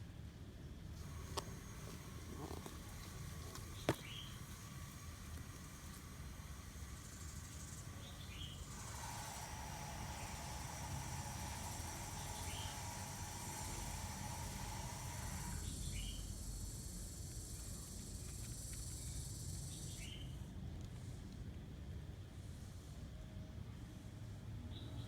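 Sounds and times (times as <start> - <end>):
insects droning: 1.0 - 20.4.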